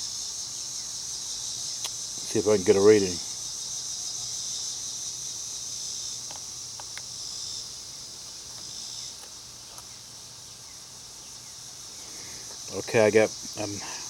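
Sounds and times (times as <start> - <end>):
insects chirring: 0.0 - 14.0
faint ticks: 1.8 - 2.0, 6.2 - 7.1.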